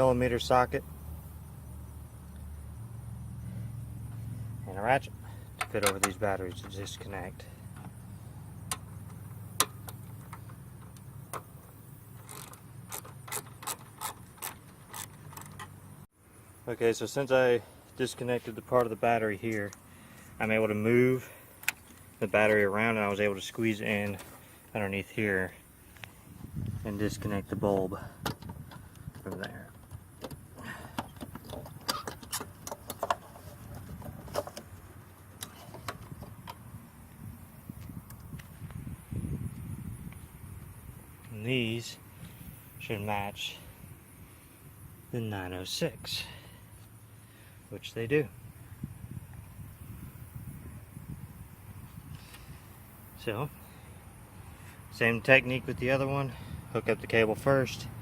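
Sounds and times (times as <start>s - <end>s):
small hard parts clicking: 12.2s - 15.8s.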